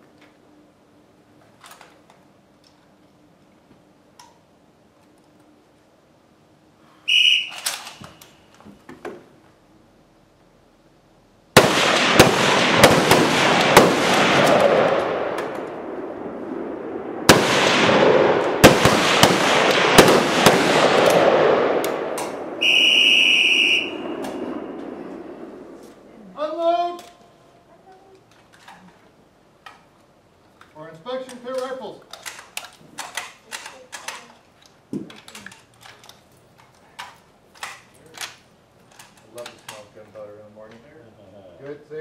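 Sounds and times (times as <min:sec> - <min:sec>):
whistle blast: 0:07.1 - 0:08.4, 0:22.6 - 0:24.8
echoing rifle shots: 0:11.6 - 0:25.8.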